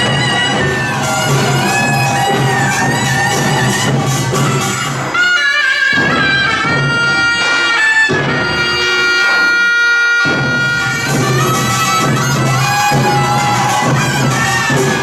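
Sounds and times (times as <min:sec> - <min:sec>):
percussion beat: 0:00.0 - 0:15.0
shawm playing held notes: 0:00.0 - 0:15.0.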